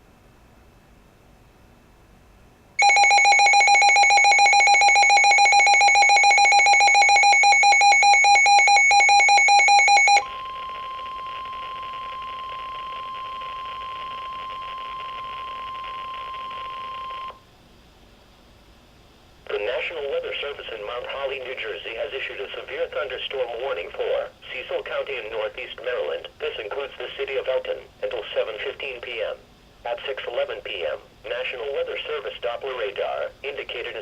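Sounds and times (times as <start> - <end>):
steady warning alert tone: 2.8 - 10.4
pulsing electronic alarm beep: 2.8 - 17.3
broadcast hiss: 10.2 - 34.0.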